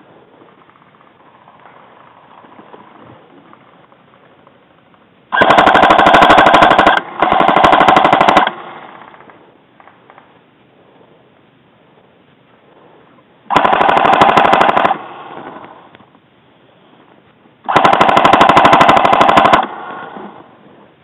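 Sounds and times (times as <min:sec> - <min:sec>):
airsoft gun full-auto bursts: 0:05.3 - 0:09.2, 0:13.5 - 0:15.7, 0:17.7 - 0:20.3.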